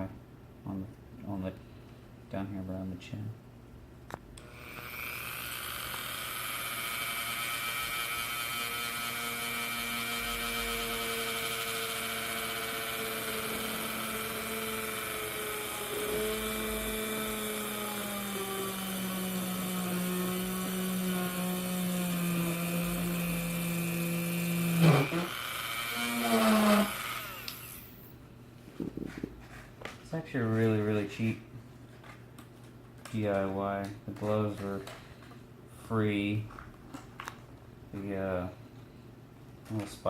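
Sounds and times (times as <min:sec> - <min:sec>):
power tool electric motor running: 0:04.4 - 0:28.0.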